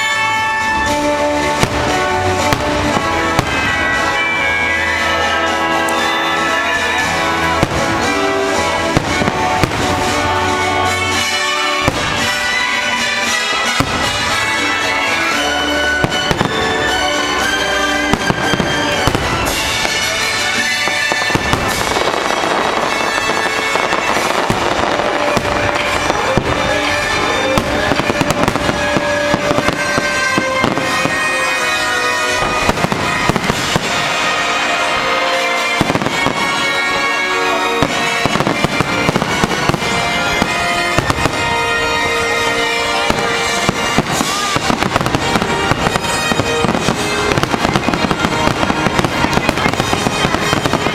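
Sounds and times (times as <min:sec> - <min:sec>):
fireworks bangs and crackles: 0:00.0 - 0:50.9
orchestral music over speakers: 0:00.0 - 0:50.9.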